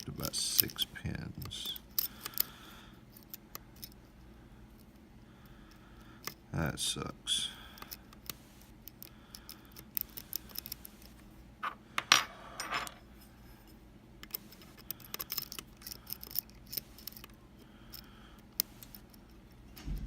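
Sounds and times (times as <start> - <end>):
lock picks clicking and scraping: 0.4 - 2.5, 3.1 - 4.0, 7.8 - 11.8, 13.6 - 19.7.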